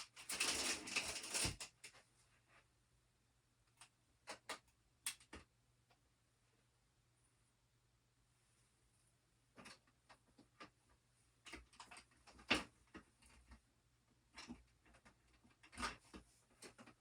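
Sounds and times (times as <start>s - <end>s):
objects being handled and moved: 0.0s - 2.7s, 9.5s - 17.0s.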